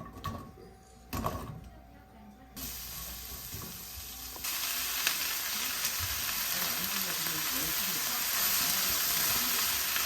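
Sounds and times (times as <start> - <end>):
sizzling hiss: 2.6 - 10.0.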